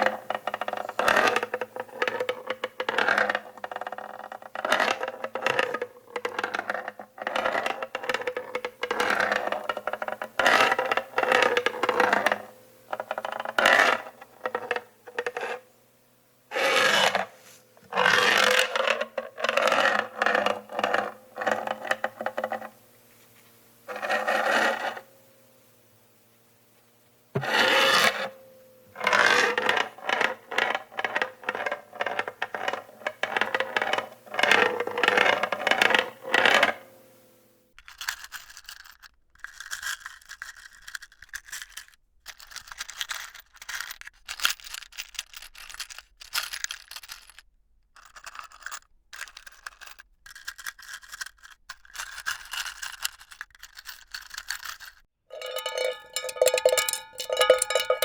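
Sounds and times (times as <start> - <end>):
screws rattling in a box: 0.0 - 15.6, 37.8 - 58.0
screws rattling in a metal can: 0.0 - 15.6, 37.8 - 58.0.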